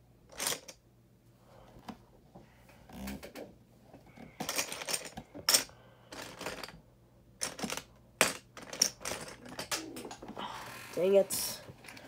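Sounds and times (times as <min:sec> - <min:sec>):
plastic bricks rattling: 0:04.4 - 0:06.8, 0:07.4 - 0:10.2.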